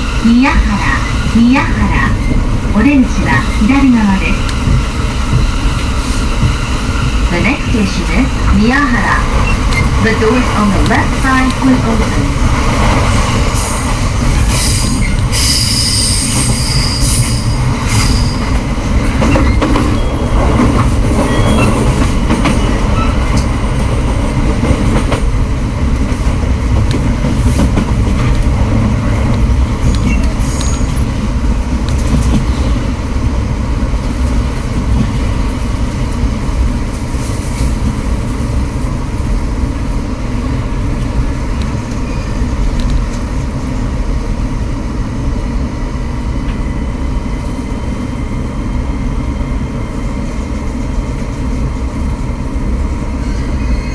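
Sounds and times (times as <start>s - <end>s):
train wheels rumbling on track: 0.0s - 53.9s
train wheels squealing: 13.6s - 18.6s, 19.2s - 20.4s, 21.2s - 23.4s, 29.8s - 31.1s, 42.0s - 42.5s, 53.1s - 53.9s.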